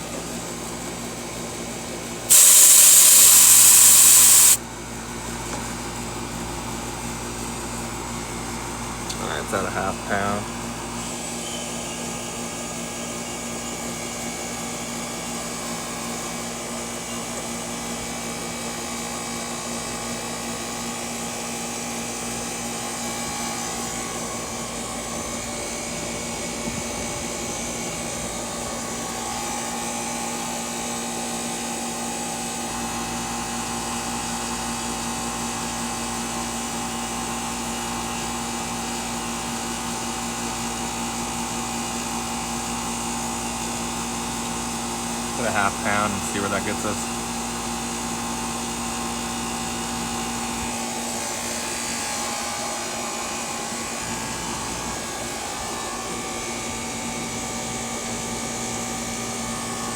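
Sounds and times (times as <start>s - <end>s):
air conditioner compressor hum: 1.5s - 4.9s, 7.4s - 11.2s, 37.0s - 50.2s.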